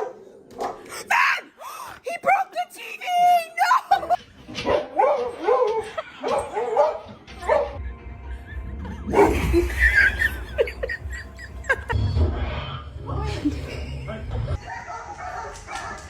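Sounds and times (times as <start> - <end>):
dog barking yipping and whining: 4.6 - 7.8.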